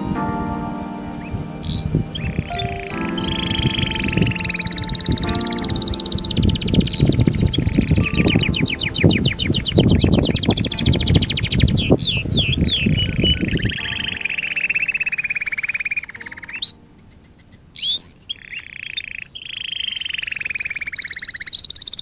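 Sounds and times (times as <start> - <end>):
low rumbling noise: 0.0 - 15.5
songbirds trilling: 0.0 - 22.0.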